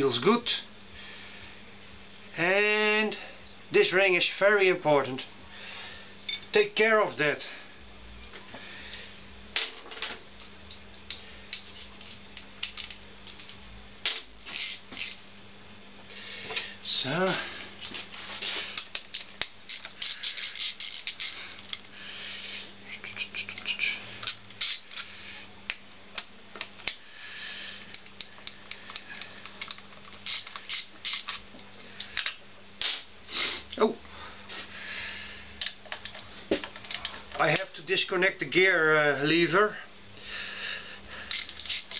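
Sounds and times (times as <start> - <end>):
metal tools clicking and clinking: 6.3 - 6.6, 41.3 - 41.9.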